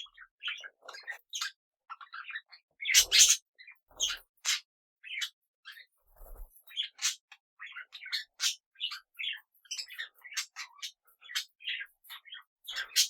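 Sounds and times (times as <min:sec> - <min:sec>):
parrots chirping and calling: 0:00.1 - 0:03.4, 0:06.8 - 0:13.0.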